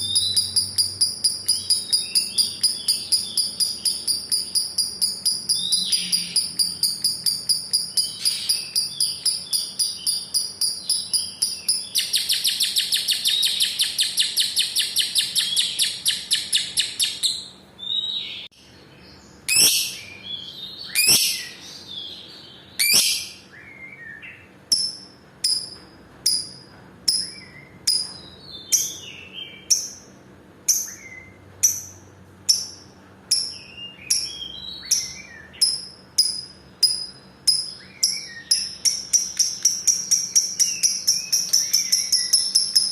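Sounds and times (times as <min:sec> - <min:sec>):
lovebird chattering trill: 0:00.0 - 0:18.4, 0:19.5 - 0:21.6, 0:22.8 - 0:23.5, 0:30.7 - 0:42.9
bird sharp chirps: 0:00.0 - 0:30.1, 0:30.7 - 0:42.9.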